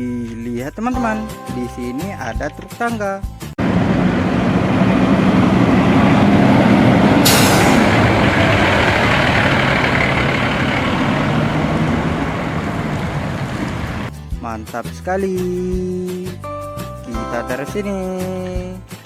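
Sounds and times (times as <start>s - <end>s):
heavy truck engine running: 2.4s - 14.1s
air brakes hissing: 7.2s - 10.4s.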